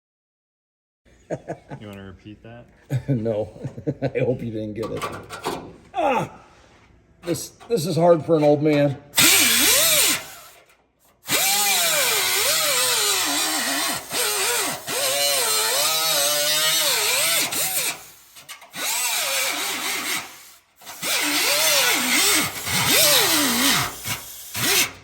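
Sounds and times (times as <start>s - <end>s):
power tool cutting: 9.2s - 25.0s.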